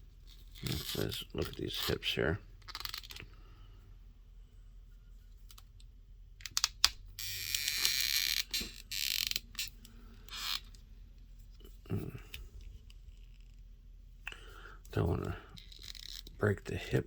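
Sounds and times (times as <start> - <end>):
plastic scraping and creaking: 0.3 - 3.3, 7.2 - 10.8, 15.2 - 16.4.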